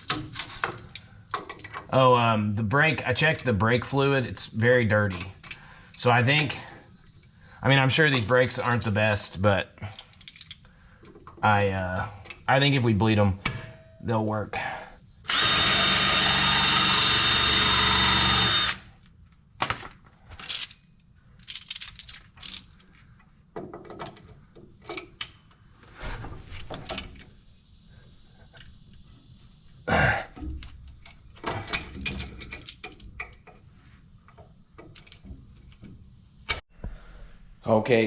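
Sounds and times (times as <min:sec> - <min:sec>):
tools clanking on metal: 0:00.0 - 0:02.3, 0:04.8 - 0:06.8, 0:08.0 - 0:09.1, 0:09.8 - 0:12.4, 0:21.4 - 0:23.0, 0:23.6 - 0:25.3, 0:30.4 - 0:33.7, 0:34.3 - 0:36.6
electric drill running: 0:15.3 - 0:18.9.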